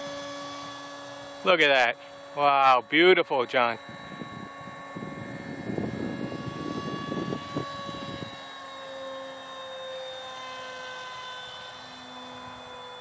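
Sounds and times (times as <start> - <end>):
model jet motor whine: 0.0 - 13.0
wind buffeting microphone: 3.8 - 8.4.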